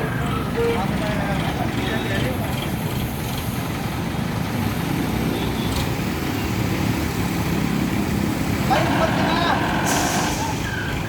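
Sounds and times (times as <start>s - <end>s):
tractor diesel engine rumble: 7.8s - 11.0s.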